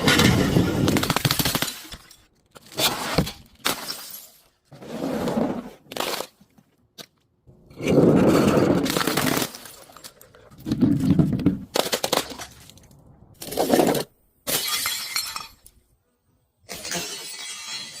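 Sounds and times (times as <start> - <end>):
glass breaking and crushing: 0.0 - 4.6, 8.8 - 10.3, 14.5 - 15.8, 16.7 - 18.0.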